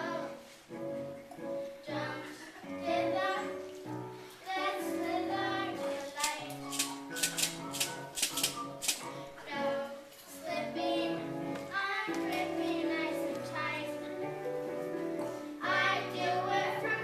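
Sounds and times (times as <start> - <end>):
children singing: 0.0 - 0.5, 1.5 - 3.8, 4.4 - 6.7, 9.0 - 14.3, 15.5 - 17.0
musical accompaniment: 0.0 - 17.0.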